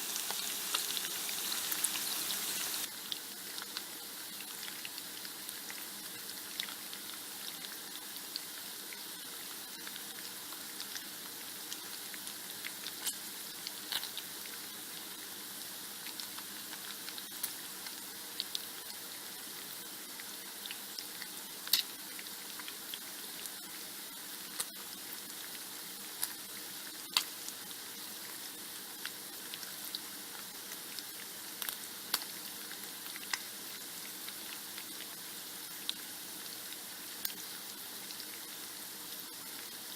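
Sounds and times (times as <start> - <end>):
fat crackling and popping: 0.0 - 3.8, 30.9 - 35.1
bacon sizzling: 0.0 - 39.9.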